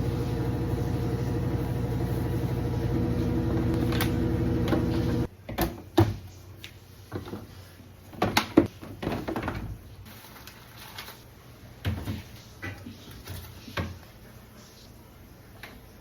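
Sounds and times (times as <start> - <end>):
items knocking and clattering: 8.1 - 9.8.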